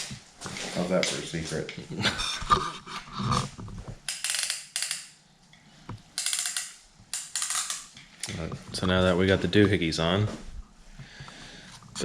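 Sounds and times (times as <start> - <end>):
metallic clicking and rattling: 4.0 - 5.2, 6.2 - 8.0.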